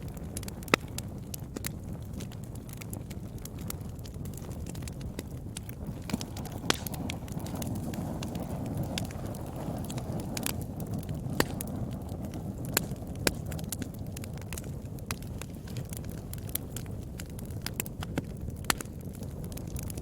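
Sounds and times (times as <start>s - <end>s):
fire crackling and popping: 0.0s - 20.0s
rush of flames: 0.0s - 20.0s.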